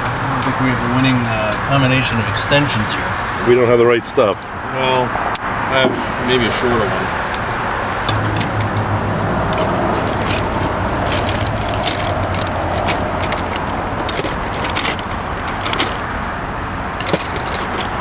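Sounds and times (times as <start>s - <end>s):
road traffic rumble: 0.0s - 18.0s
metal tools clinking and rattling: 7.4s - 8.8s, 9.5s - 16.3s, 17.0s - 18.0s.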